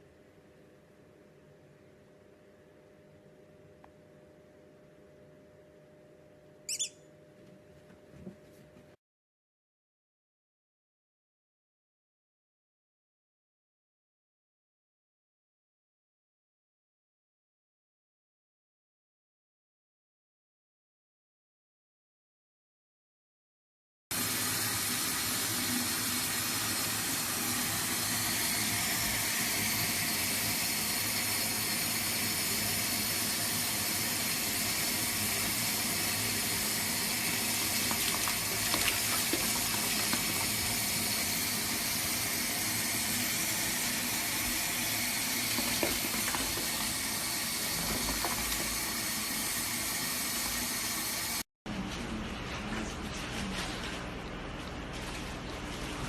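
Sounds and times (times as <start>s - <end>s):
water running: 24.1s - 56.0s.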